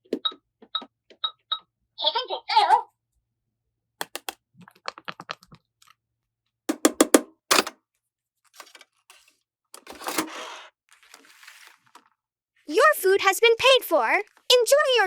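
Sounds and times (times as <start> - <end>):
toy cash register keys clicking: 6.8 - 7.8, 9.8 - 10.4.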